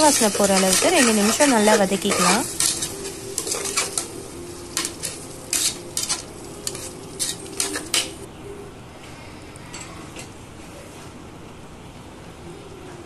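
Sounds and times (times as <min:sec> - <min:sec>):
spoon scraping and knocking pot: 0:00.0 - 0:04.1
frying oil sizzling: 0:00.0 - 0:08.3.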